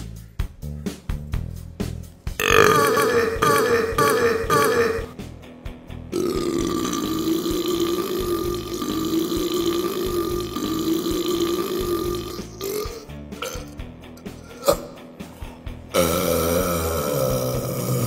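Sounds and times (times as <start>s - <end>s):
long human burp: 2.4s - 5.2s, 6.1s - 13.8s, 14.5s - 15.0s, 15.9s - 18.0s.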